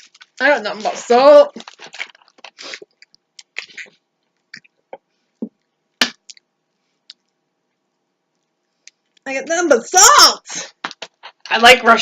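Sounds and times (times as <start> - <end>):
person chewing with mouth smacks: 2.4 - 5.1.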